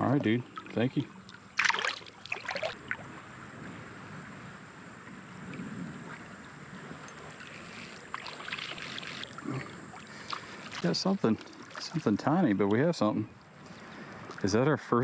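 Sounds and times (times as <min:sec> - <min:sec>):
creek water running: 0:00.0 - 0:15.0
loud water splash: 0:01.6 - 0:03.1.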